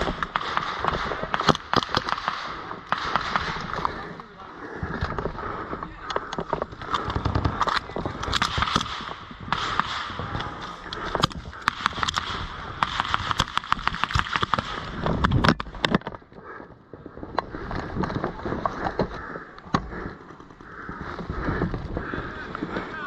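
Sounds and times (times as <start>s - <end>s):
airsoft guns firing: 0.0s - 4.2s, 6.8s - 15.8s.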